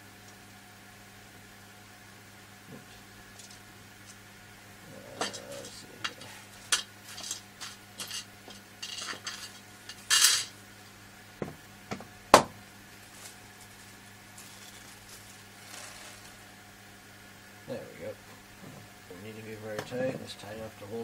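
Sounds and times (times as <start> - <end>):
scraping rustle: 5.1 - 10.5, 13.0 - 16.5.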